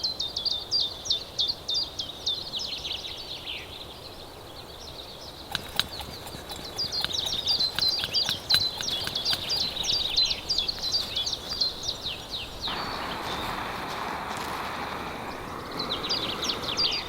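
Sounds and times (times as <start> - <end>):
songbird chirping: 0.0 - 17.0
sharp clicks: 5.4 - 16.0
steady hiss: 9.4 - 17.0.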